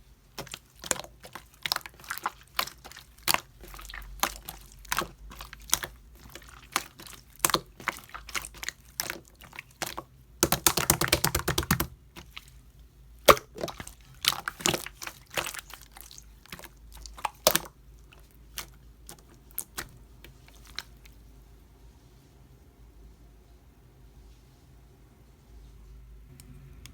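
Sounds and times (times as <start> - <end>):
slime clicking and popping: 0.4 - 12.4, 13.2 - 20.9
slime squeezed by hand: 13.2 - 21.1.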